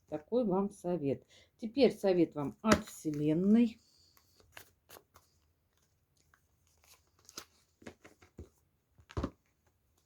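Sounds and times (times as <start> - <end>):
cards rustling and snapping: 4.1 - 10.0.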